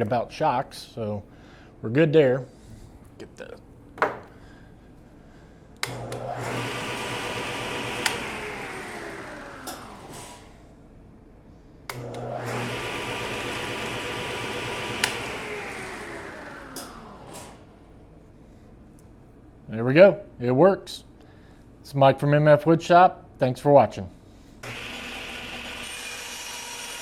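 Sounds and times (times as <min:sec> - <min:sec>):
switch click: 0:05.8 - 0:06.2, 0:15.0 - 0:15.2
table saw motor running: 0:05.9 - 0:10.4, 0:11.9 - 0:17.6, 0:24.6 - 0:27.0.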